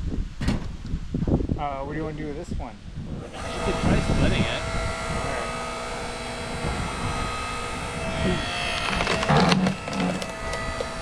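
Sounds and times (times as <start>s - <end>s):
engine running: 3.2s - 11.0s
wood cracking and splintering: 5.5s - 11.0s.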